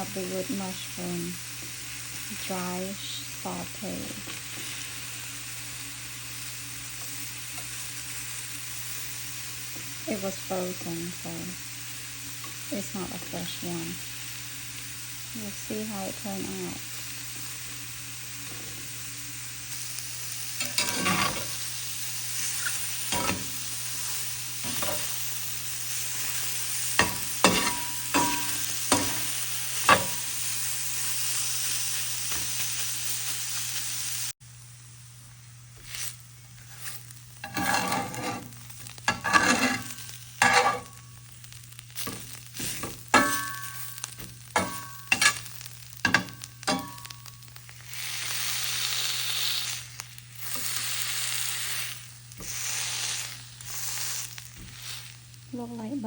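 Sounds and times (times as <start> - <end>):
mushrooms sizzling in a pan: 0.0 - 56.0
utensil scraping a pan: 20.6 - 21.7, 22.4 - 25.2, 26.2 - 30.3, 35.8 - 41.0, 42.0 - 49.8, 50.4 - 55.2.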